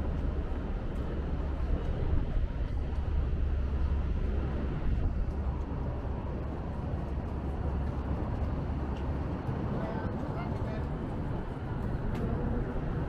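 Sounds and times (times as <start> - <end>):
low city rumble: 0.0 - 13.0.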